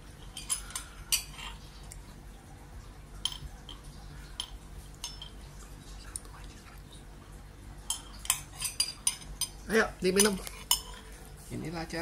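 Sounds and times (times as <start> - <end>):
spoon clinking against glass: 4.4 - 5.4, 7.9 - 11.0.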